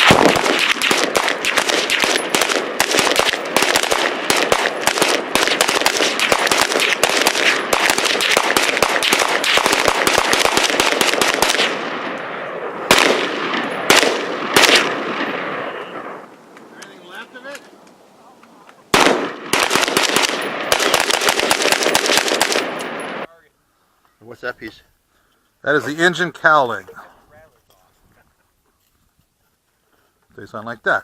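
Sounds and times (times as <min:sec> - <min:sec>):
rapid overlapping gunshots: 0:00.0 - 0:16.3, 0:18.9 - 0:23.3.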